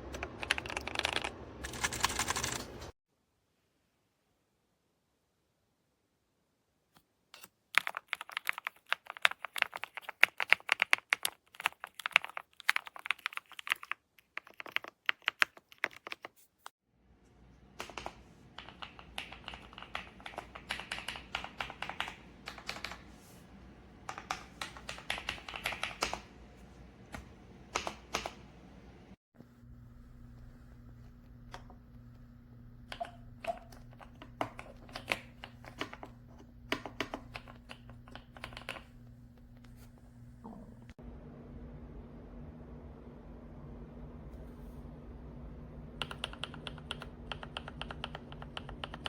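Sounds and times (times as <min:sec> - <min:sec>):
typing on mechanical keyboard: 0:00.0 - 0:02.9, 0:07.7 - 0:16.4, 0:17.8 - 0:23.0, 0:24.0 - 0:26.3, 0:27.7 - 0:28.4, 0:32.8 - 0:38.9, 0:46.0 - 0:49.0
steady low hum: 0:17.0 - 0:49.0.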